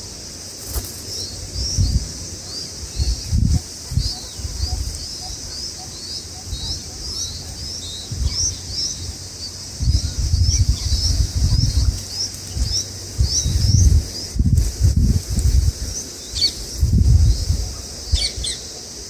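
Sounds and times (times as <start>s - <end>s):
steady high hiss: 0.0s - 19.0s
small bird chirping: 0.6s - 18.7s
low rumbling buffets: 6.5s - 18.2s.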